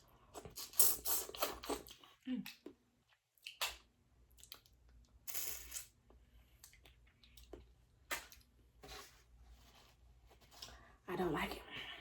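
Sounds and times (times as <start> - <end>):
wet chewing and smacking: 0.3 - 5.1, 6.6 - 8.6.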